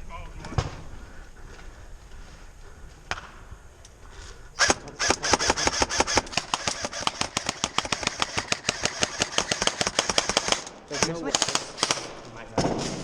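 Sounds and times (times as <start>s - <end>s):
airsoft guns firing bursts: 4.6s - 13.0s.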